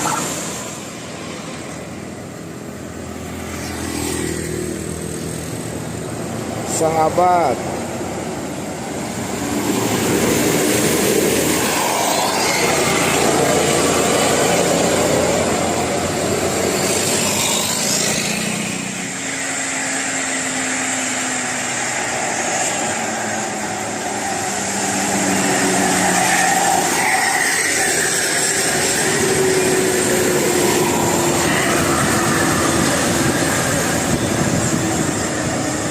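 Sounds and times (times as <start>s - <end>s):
bus engine and tyres: 0.0s - 35.9s.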